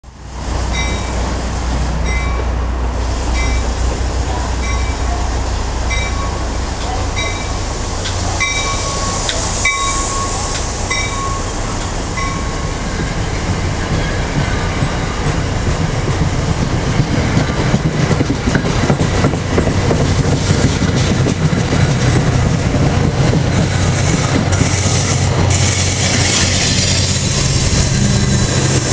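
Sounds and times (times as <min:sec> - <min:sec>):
diesel locomotive engine drone: 0:00.0 - 0:28.9
train bell ringing: 0:00.7 - 0:01.2, 0:02.0 - 0:02.5, 0:03.4 - 0:03.7, 0:04.6 - 0:05.2, 0:05.9 - 0:13.3.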